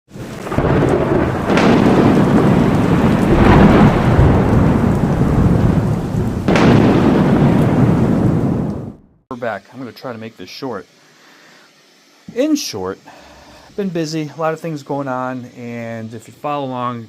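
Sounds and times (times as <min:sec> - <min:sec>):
heavy rain: 0:00.1 - 0:09.0
rumble of thunder: 0:00.2 - 0:09.1
sharp thunderclaps: 0:00.2 - 0:09.2.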